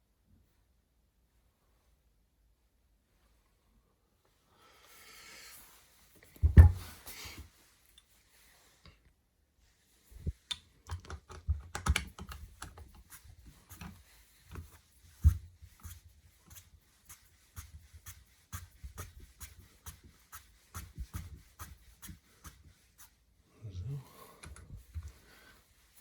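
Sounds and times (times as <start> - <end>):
metal clicks and taps: 10.5 - 12.8.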